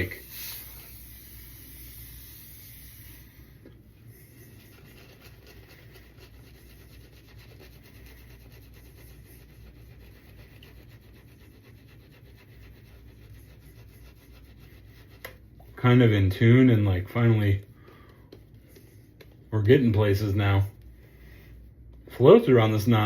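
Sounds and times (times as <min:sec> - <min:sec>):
shaving brush scratching lather: 0:04.0 - 0:17.6.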